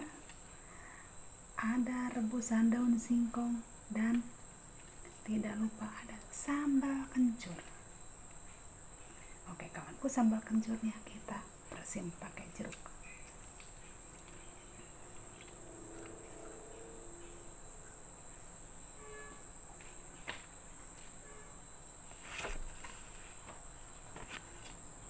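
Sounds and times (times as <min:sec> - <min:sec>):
insects trilling: 0:00.0 - 0:25.0.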